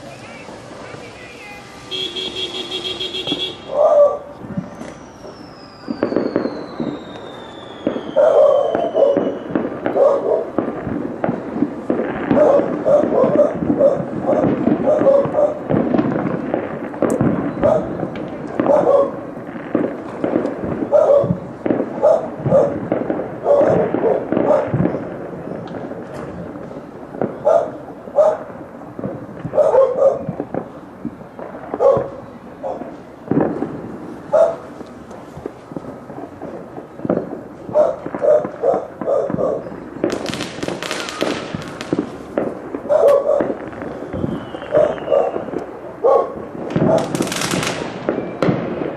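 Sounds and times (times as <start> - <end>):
fireworks bangs and cracks: 0.0 - 48.9
dog barking: 3.7 - 4.3, 8.2 - 9.2, 9.9 - 10.6, 12.3 - 15.6, 17.6 - 17.9, 18.6 - 19.2, 20.9 - 21.4, 22.0 - 22.8, 23.4 - 24.7, 27.4 - 28.5, 29.5 - 30.3, 31.8 - 32.9, 34.3 - 34.7, 37.7 - 39.7, 42.8 - 43.6, 44.7 - 45.4, 46.0 - 47.1
long falling whistle: 4.6 - 9.5, 44.1 - 45.6.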